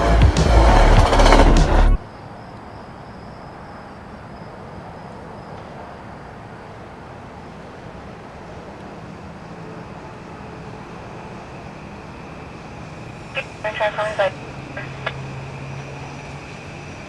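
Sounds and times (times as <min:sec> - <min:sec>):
crickets chirping: 0:02.0 - 0:06.6.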